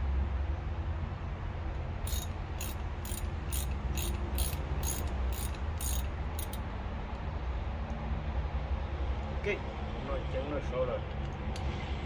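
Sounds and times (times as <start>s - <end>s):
mechanism clicking: 2.1s - 6.6s.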